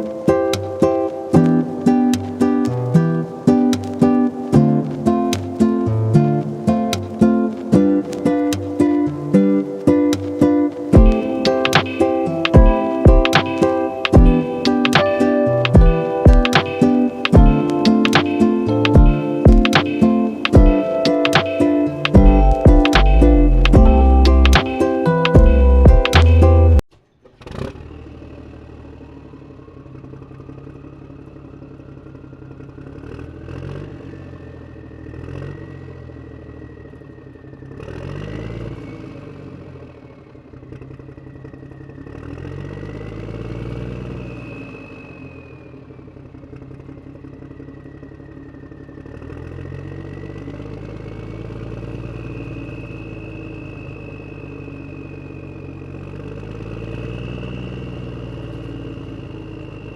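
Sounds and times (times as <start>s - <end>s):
high whine: 7.2s - 26.8s
engine revving: 27.4s - 28.8s, 32.8s - 36.6s, 37.7s - 39.8s, 42.0s - 45.8s.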